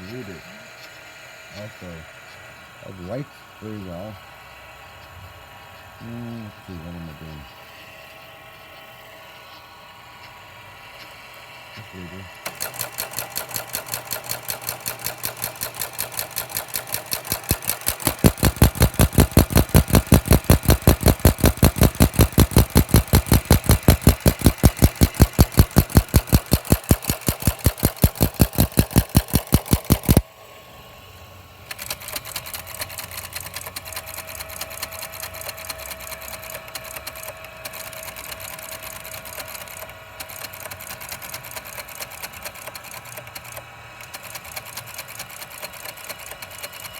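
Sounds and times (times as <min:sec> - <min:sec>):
teletype machine clattering: 0:12.4 - 0:30.2, 0:31.7 - 0:46.9.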